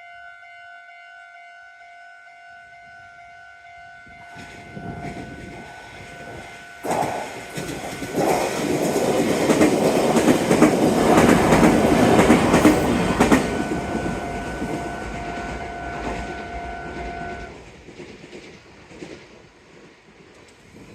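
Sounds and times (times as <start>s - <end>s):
electronic crossing warning tone: 2.9s - 17.6s
train wheels clattering over rails: 4.3s - 20.9s.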